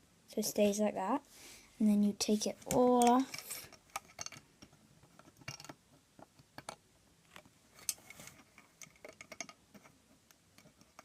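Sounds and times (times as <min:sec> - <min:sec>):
small plastic clicks: 0:02.7 - 0:11.0.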